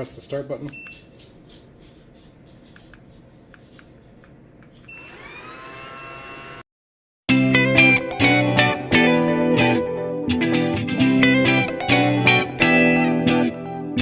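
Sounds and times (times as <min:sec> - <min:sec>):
robot vacuum motor whine: 0:05.0 - 0:06.6
loud guitar music: 0:07.3 - 0:14.0.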